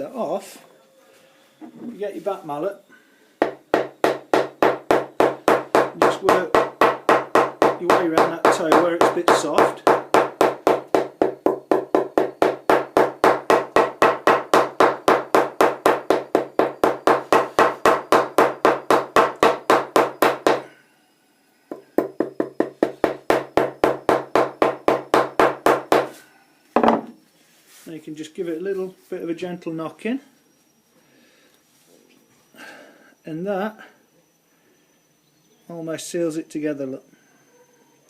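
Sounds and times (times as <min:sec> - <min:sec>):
mallet tapping cricket bat: 0:03.4 - 0:20.6, 0:21.7 - 0:26.1.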